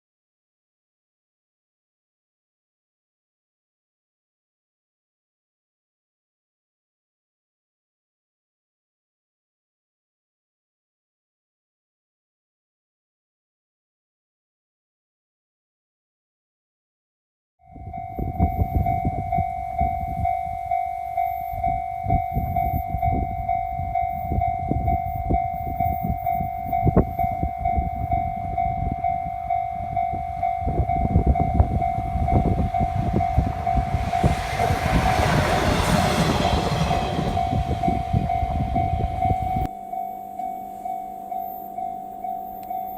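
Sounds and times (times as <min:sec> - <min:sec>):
train wheels passing: 0:30.5 - 0:39.7
low rumble: 0:30.8 - 0:39.7.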